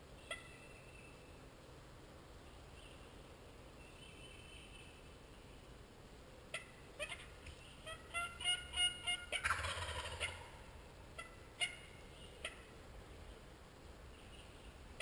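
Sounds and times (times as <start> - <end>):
turkey gobble: 0.2 - 0.6, 6.5 - 12.7
wild turkey calling: 0.2 - 1.3, 6.5 - 12.8.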